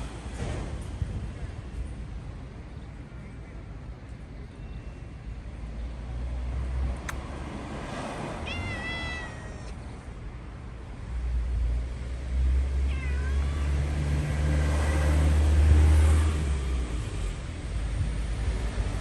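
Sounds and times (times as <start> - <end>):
sharp click: 7.0 - 7.3
cat meowing: 8.4 - 9.8, 12.8 - 13.8.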